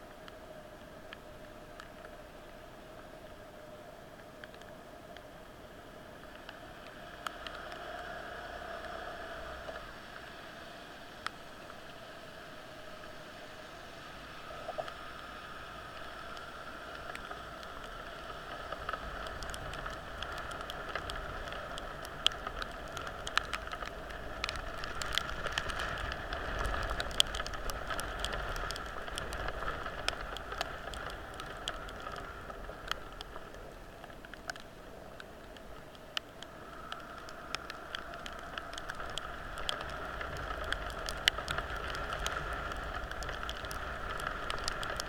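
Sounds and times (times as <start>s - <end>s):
wet hiss and low rumble: 0.0s - 45.0s
raindrops tapping: 16.2s - 45.0s.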